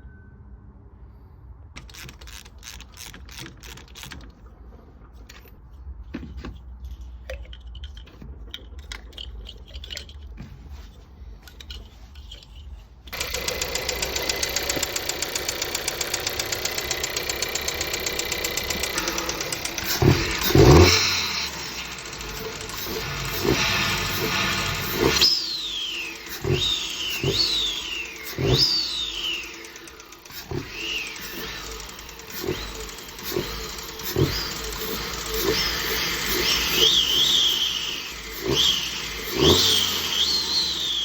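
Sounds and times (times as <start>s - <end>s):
engine ticking: 11.4s - 41.0s
car engine running: 11.5s - 41.0s.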